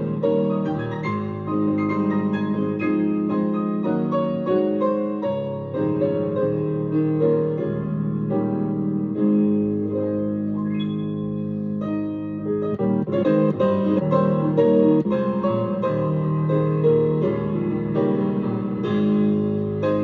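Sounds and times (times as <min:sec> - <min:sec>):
slow piano chords: 0:00.0 - 0:20.0.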